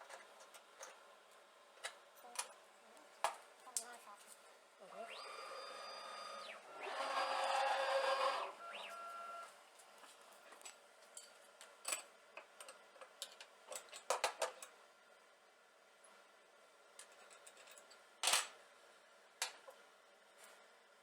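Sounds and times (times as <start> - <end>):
stepper motors whining: 4.8 - 9.5.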